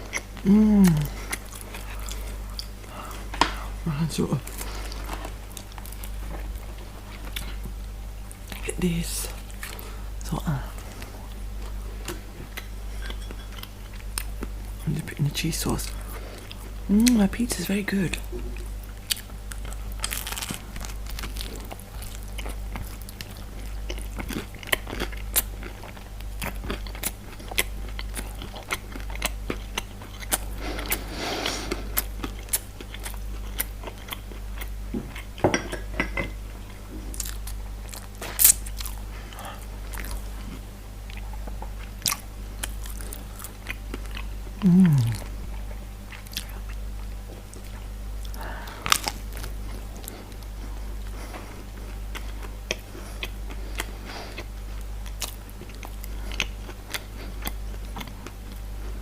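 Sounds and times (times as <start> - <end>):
crunchy bites and chewing: 18.6 - 35.4, 36.7 - 51.1, 51.7 - 58.7.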